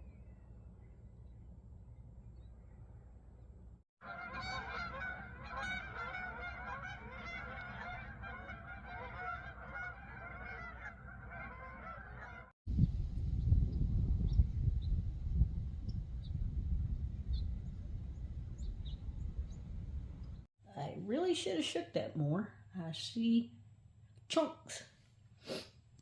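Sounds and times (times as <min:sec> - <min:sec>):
flock of birds calling: 0:04.0 - 0:12.5
low rumble: 0:12.7 - 0:20.5.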